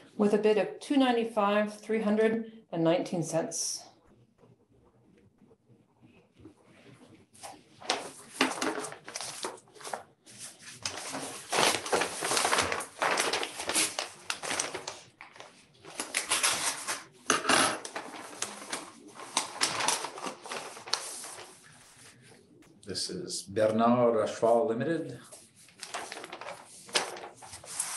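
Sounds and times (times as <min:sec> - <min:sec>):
paper rustling and crackling: 0:06.4 - 0:22.4, 0:25.3 - 0:27.9
envelope tearing: 0:07.9 - 0:10.1, 0:10.7 - 0:21.5, 0:25.8 - 0:27.9.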